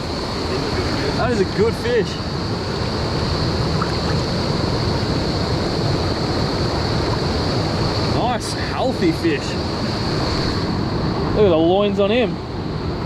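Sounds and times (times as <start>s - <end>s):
stream rushing over rocks: 0.0s - 11.6s.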